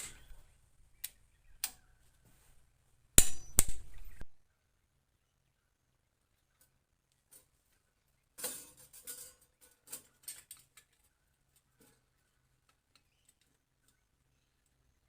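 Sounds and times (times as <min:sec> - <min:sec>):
tools and parts clicking: 0:08.4 - 0:12.0.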